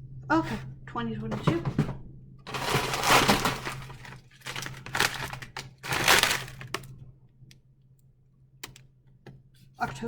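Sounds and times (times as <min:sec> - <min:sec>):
plastic packaging crinkling: 0:02.5 - 0:06.9.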